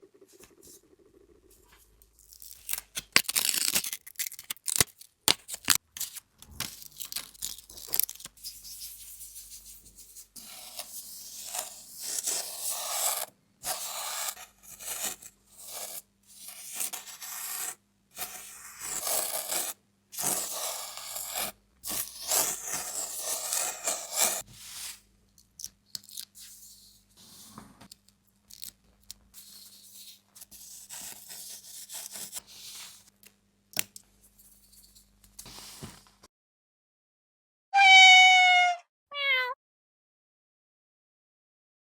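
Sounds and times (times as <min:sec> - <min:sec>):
hand scraping sand on surface: 0:11.5 - 0:25.0.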